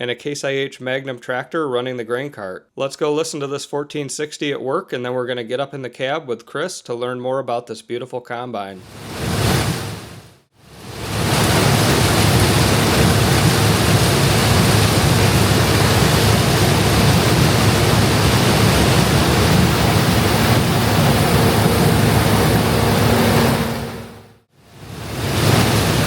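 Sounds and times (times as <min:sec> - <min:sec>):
combine harvester running: 0:11.1 - 0:24.3.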